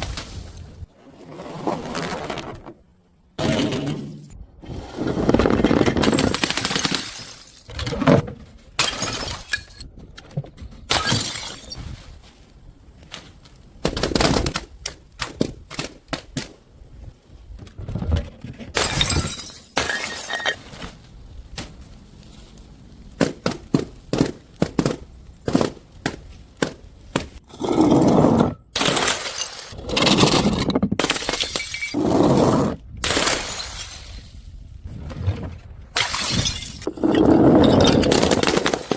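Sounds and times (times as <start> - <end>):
things breaking and crushing: 5.2 - 11.9, 18.3 - 21.0, 27.2 - 38.9.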